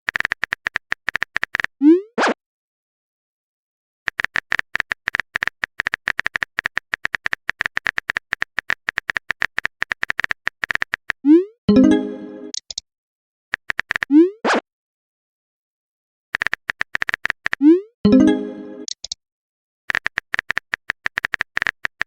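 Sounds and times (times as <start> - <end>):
phone keyboard typing clicks: 0.1 - 1.7, 4.1 - 11.2, 13.6 - 14.1, 16.4 - 17.6, 18.8 - 19.2, 19.9 - 22.0
pitched alert tone: 11.7 - 12.6, 18.1 - 18.9.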